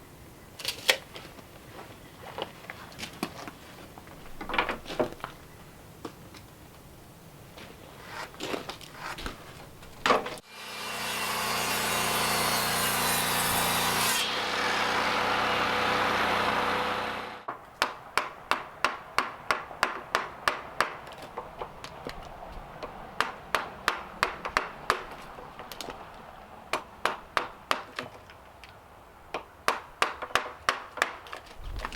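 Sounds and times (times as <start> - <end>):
hand saw cutting wood: 10.4 - 17.4.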